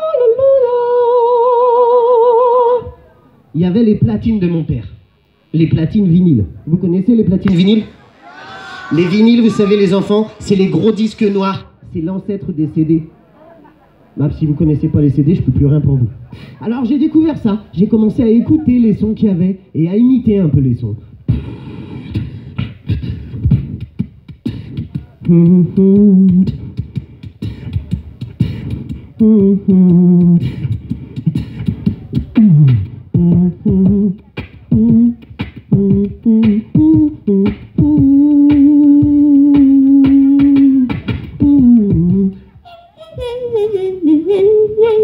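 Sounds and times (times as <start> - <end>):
man beatboxing: 7.5 - 11.6, 21.3 - 42.5
man singing notes: 7.5 - 11.8.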